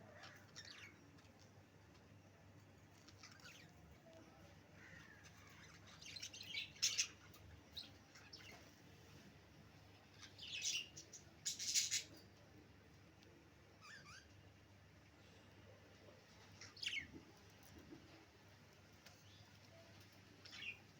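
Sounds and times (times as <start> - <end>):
budgerigars chirping: 10.2 - 12.2.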